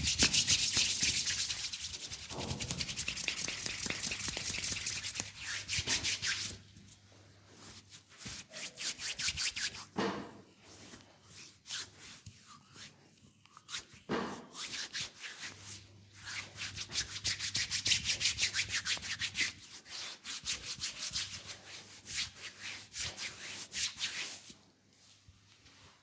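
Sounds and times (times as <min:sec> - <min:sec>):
scratchy rubbing strokes on skin: 0:00.0 - 0:06.6, 0:07.6 - 0:09.9.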